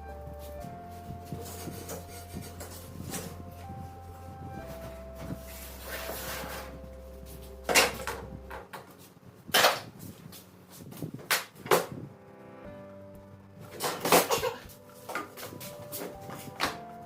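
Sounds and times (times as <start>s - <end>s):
faint steady tones: 0.0s - 9.5s.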